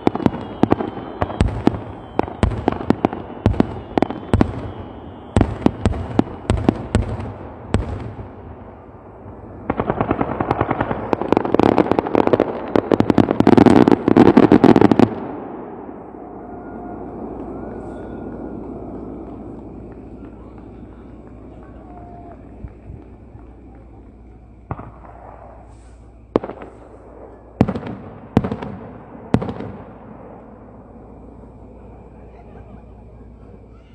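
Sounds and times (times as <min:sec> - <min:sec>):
fireworks bangs and crackling: 0:00.0 - 0:33.9
low rumble: 0:15.2 - 0:33.7.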